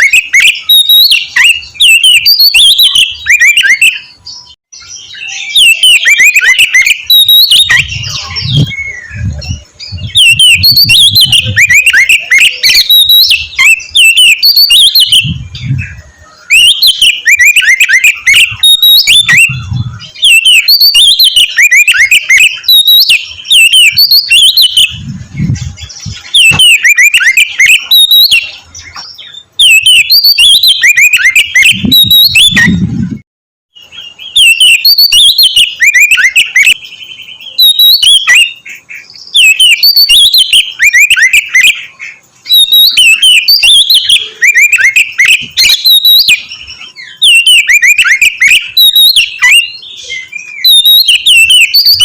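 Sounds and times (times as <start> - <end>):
songbird whistling and chirping: 0.0 - 52.0
dull low thumps: 24.9 - 26.3, 31.8 - 33.2.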